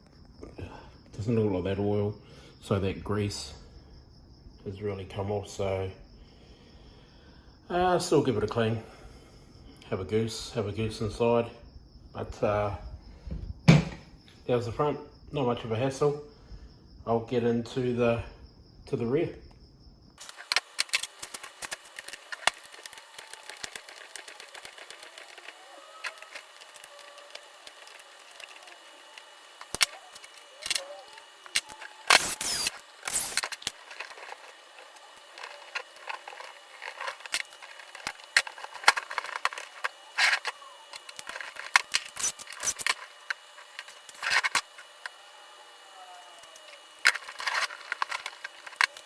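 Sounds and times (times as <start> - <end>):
scraping bursts: 20.2 - 45.2, 46.2 - 49.0
small parts clicking and clinking: 20.2 - 49.0.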